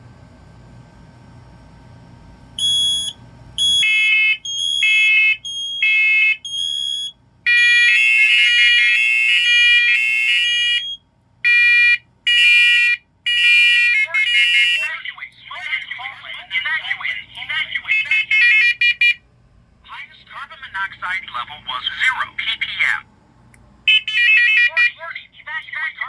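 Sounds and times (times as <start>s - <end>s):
smoke alarms beeping: 2.6s - 14.9s, 17.9s - 19.2s.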